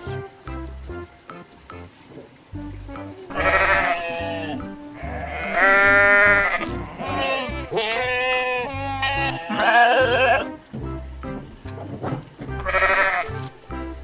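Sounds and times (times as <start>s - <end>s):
sheep or goats bleating: 3.3s - 10.5s, 12.6s - 13.3s
background music with bass beat: 10.0s - 14.0s.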